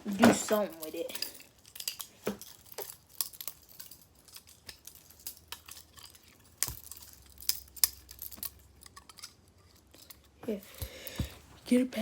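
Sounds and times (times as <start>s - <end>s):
small hard objects clinking: 0.0s - 11.4s.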